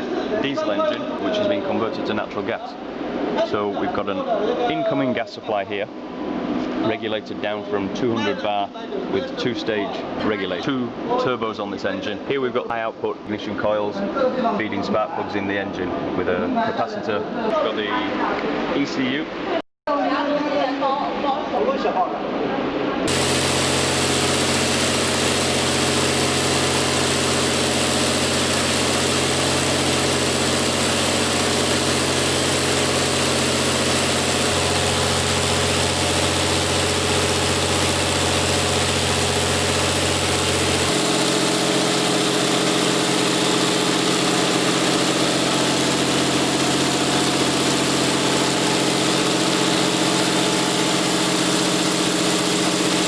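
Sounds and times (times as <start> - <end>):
generator engine running: 23.1 - 53.0.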